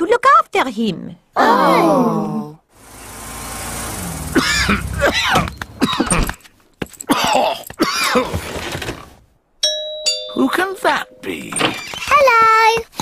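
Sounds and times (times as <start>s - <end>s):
cartoon character groaning: 1.4s - 2.6s
cartoon character coughing: 4.4s - 6.3s, 7.1s - 8.4s.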